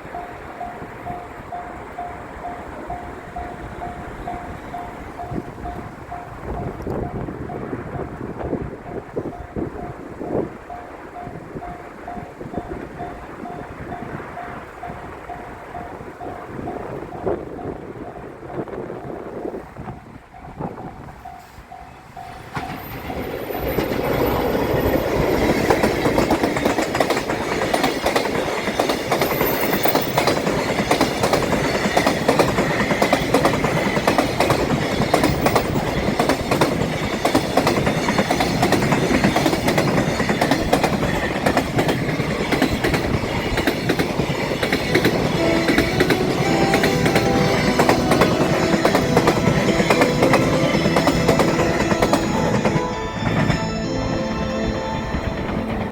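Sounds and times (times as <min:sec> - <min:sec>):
train wheels clattering: 0:20.0 - 0:53.9.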